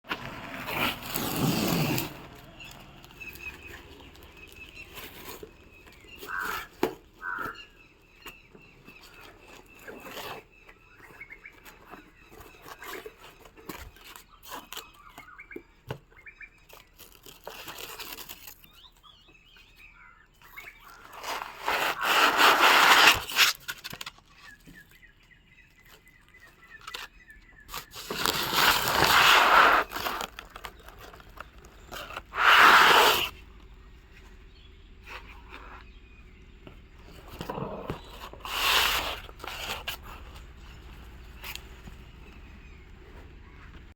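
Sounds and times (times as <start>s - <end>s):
packaging tearing and rustling: 0.2s - 6.6s, 16.8s - 18.8s, 21.0s - 24.3s, 27.7s - 33.3s
handling scrapes and clicks: 20.5s - 25.1s, 37.1s - 43.3s.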